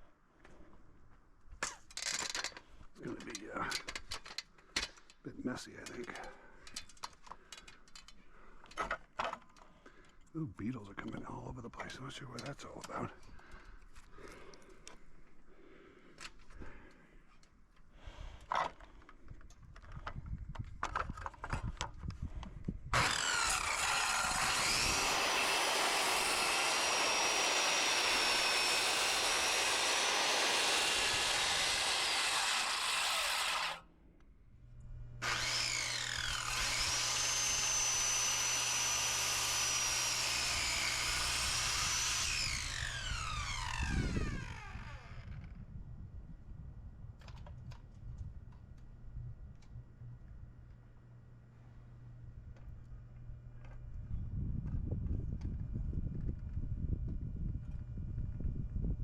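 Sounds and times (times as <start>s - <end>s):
circular saw cutting wood: 22.9s - 33.9s, 35.2s - 45.3s.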